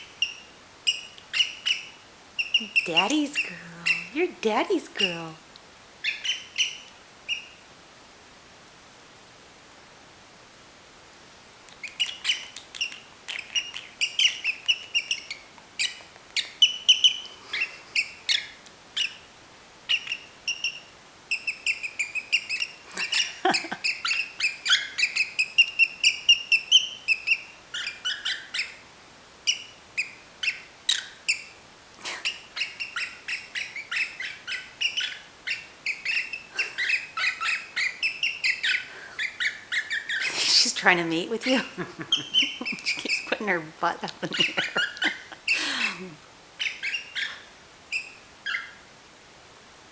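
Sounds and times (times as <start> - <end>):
cockatiel whistling and singing: 0.0 - 2.8, 6.0 - 7.6, 11.8 - 19.2, 19.9 - 28.8, 29.5 - 31.5, 32.2 - 40.3, 42.0 - 43.3, 44.3 - 45.6, 46.6 - 48.8.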